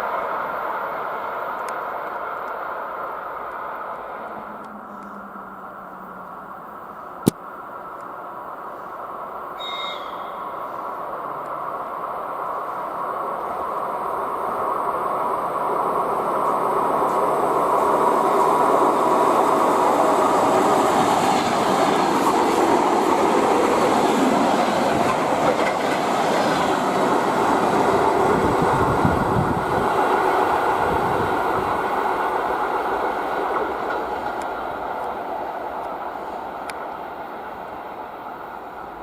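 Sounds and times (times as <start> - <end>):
train wheels rumbling on rails: 9.2 - 39.0
clickety-clack over rail joints: 21.0 - 27.2, 33.0 - 36.0.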